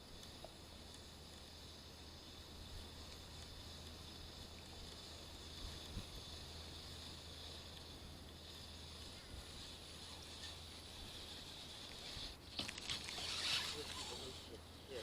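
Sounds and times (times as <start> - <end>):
high-pitched hiss: 0.0 - 15.0.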